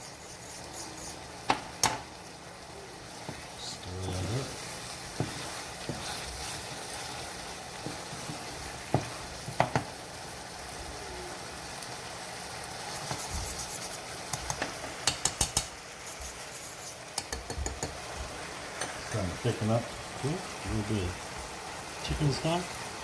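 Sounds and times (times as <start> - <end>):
food sizzling in a pan: 0.0 - 23.0
utensil clicking against pan: 14.3 - 15.8, 17.1 - 18.0.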